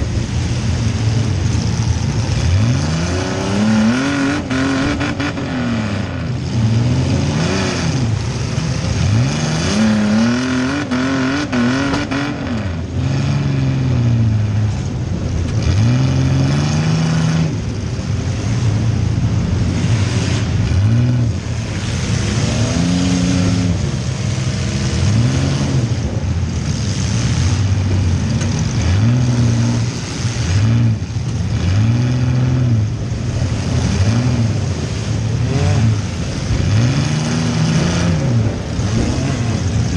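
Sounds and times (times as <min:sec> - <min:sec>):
car engine revving: 0:00.0 - 0:39.9.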